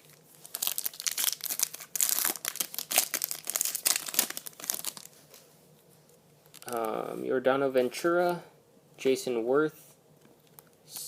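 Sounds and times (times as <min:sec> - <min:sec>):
foil wrapper tearing and crinkling: 0:00.0 - 0:05.1.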